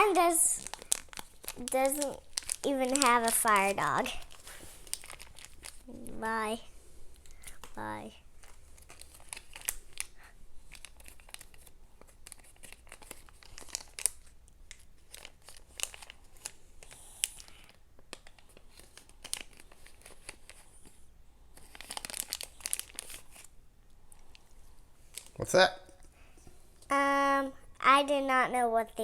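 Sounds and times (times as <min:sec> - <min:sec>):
plastic bags tearing and crumpling: 0:00.0 - 0:06.1, 0:08.4 - 0:20.7, 0:21.6 - 0:23.5, 0:25.1 - 0:25.4.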